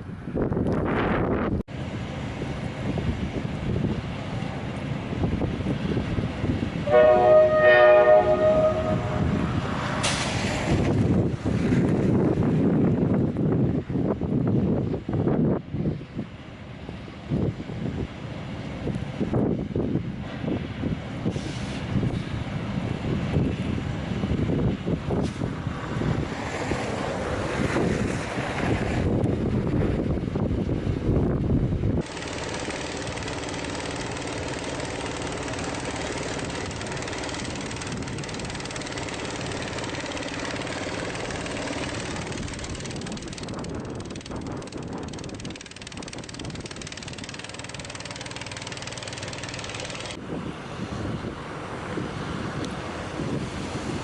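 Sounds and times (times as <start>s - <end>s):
wind gusting against microphone: 0.0s - 32.1s, 35.9s - 47.4s, 50.1s - 54.0s
engine running: 31.3s - 50.7s.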